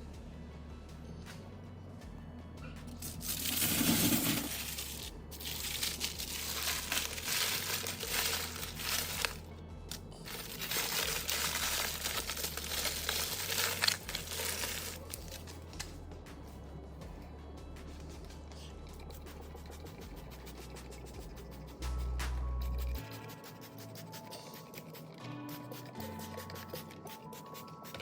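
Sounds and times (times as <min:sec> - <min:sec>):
background music with bass line: 0:00.0 - 0:24.5
rustling crinkling noise: 0:03.0 - 0:09.4, 0:10.2 - 0:15.6.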